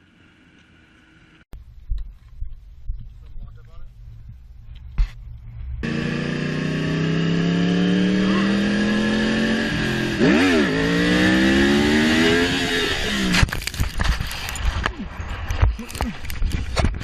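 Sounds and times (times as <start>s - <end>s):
motorcycle engine accelerating: 5.3s - 13.6s.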